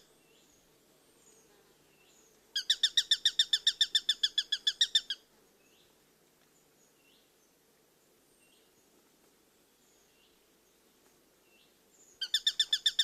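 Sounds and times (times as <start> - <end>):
faint bird chirps: 0.0 - 5.9, 11.4 - 13.0.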